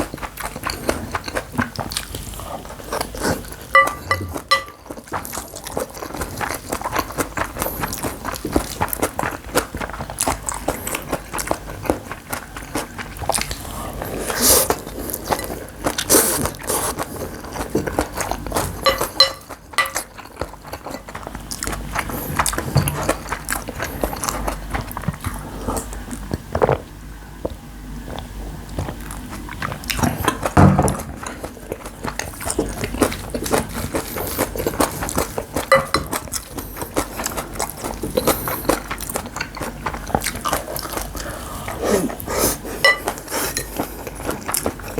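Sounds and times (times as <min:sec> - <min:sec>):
close chewing with crunches: 0:00.0 - 0:44.9.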